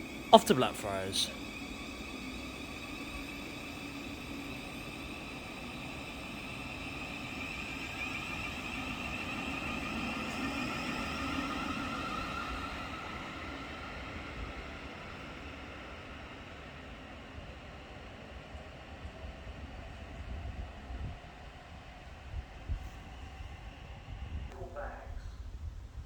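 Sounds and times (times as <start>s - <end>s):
electric train traction whine: 0.0s - 24.6s
train rolling noise: 0.0s - 26.0s.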